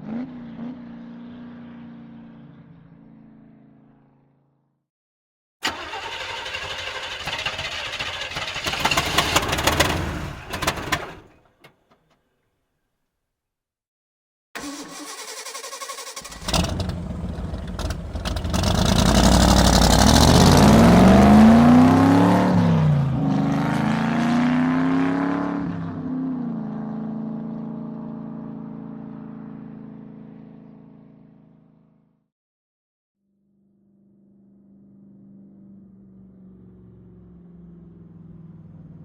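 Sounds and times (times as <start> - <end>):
car engine revving: 5.6 - 11.3, 15.9 - 25.8.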